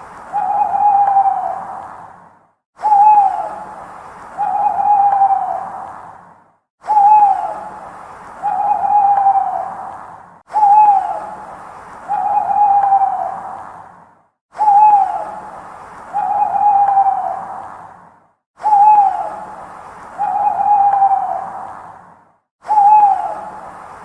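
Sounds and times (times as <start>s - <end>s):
owl hooting: 0.3s - 1.9s, 2.8s - 3.8s, 4.4s - 5.9s, 6.8s - 7.8s, 8.4s - 13.6s, 14.6s - 17.7s, 18.6s - 19.6s, 20.2s - 21.7s, 22.7s - 23.6s.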